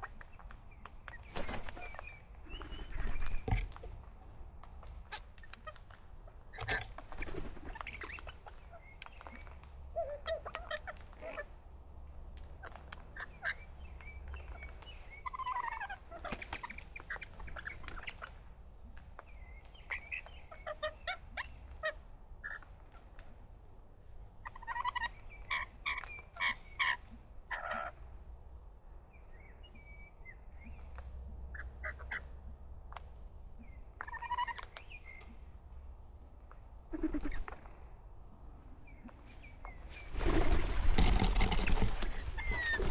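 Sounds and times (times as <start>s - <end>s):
parrots chirping and squawking: 40.9s - 42.9s.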